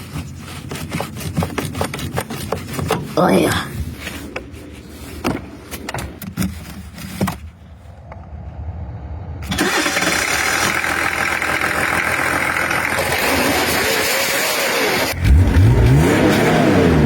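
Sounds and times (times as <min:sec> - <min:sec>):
car engine starting and running: 0:07.9 - 0:17.0.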